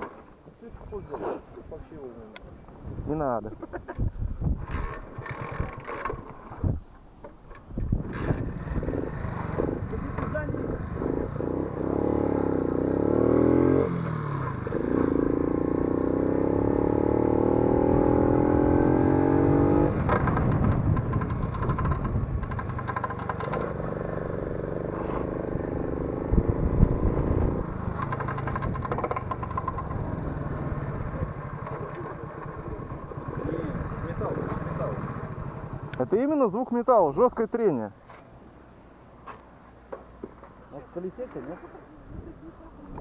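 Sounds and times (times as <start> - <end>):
moped engine revving: 4.6 - 6.3, 8.0 - 36.1
drive chain clattering and rubbing: 4.6 - 6.5.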